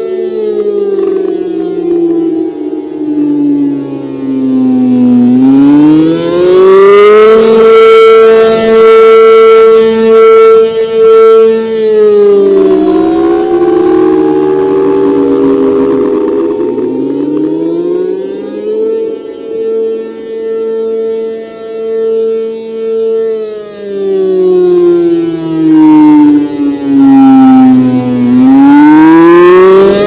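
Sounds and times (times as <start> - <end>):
warning siren rising and falling: 0.0 - 30.0.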